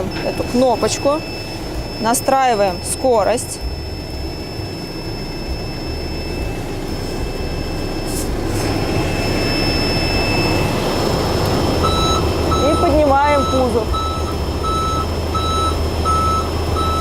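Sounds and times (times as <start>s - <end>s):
diesel engine revving: 0.0s - 17.0s
thin high whine: 0.1s - 11.1s.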